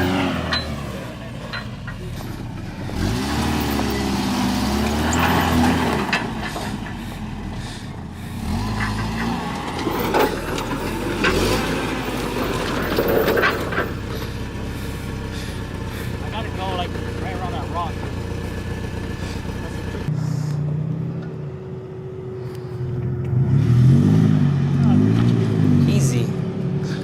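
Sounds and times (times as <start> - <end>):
truck engine revving: 0.0 - 27.0
truck jolting knocks and bangs: 0.1 - 7.0, 8.6 - 16.3.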